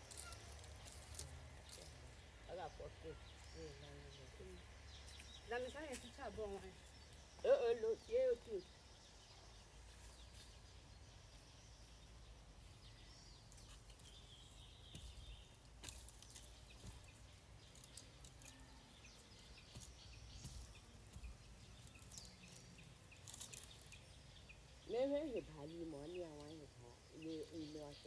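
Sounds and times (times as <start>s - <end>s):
faint bird chirps: 0.0s - 28.0s
light clicks and rustles: 14.9s - 24.2s.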